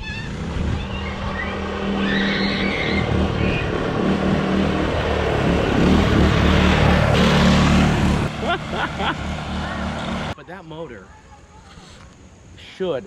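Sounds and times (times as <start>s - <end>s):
go-kart engine running: 0.0s - 10.4s.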